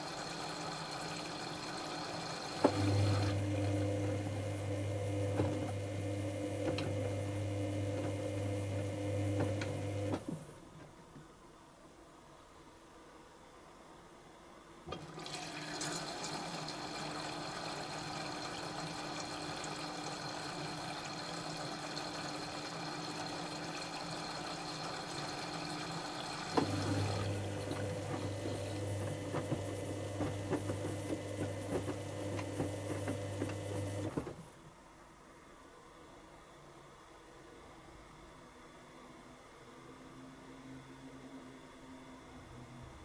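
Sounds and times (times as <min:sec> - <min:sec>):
water rushing into washing machine: 0:00.0 - 0:10.4, 0:14.9 - 0:34.5
washing machine hum: 0:00.0 - 0:11.2, 0:14.8 - 0:34.9.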